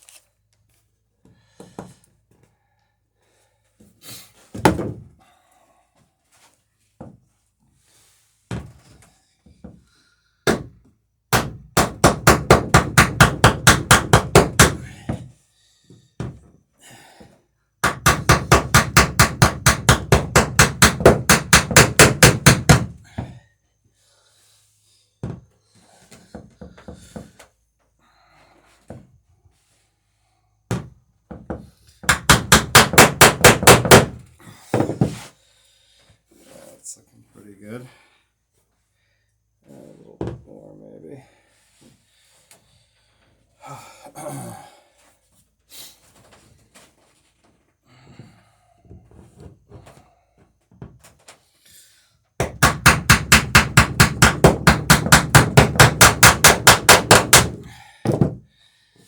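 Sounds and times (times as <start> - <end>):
hammer strikes on rivets: 4.5 - 5.1, 10.4 - 15.3, 17.8 - 23.4, 30.7 - 35.2, 52.4 - 58.4.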